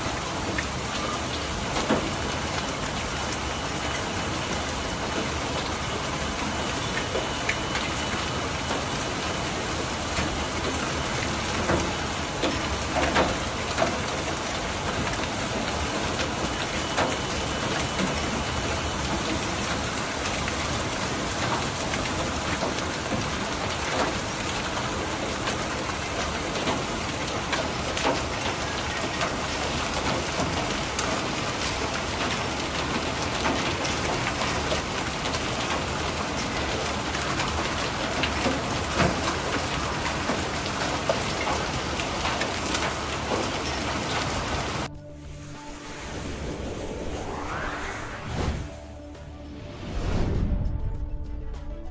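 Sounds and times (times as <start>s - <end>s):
heavy rain hiss: 8.2s - 48.9s.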